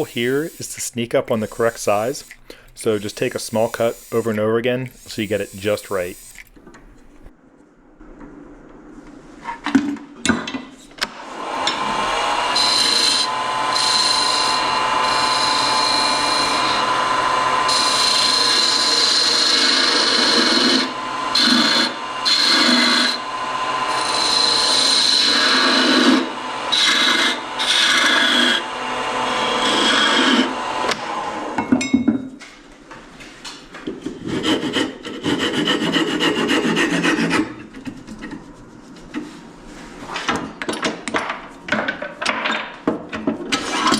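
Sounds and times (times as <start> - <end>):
lathe tool scraping wood: 0.0 - 7.3, 11.3 - 31.3, 34.1 - 38.7.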